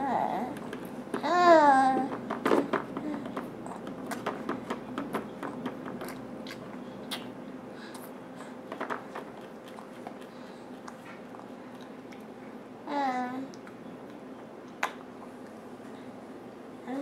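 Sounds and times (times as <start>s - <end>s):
faint steady hum: 0.0s - 17.0s
baby mouth smacks and clicks: 3.4s - 7.4s, 14.7s - 15.1s.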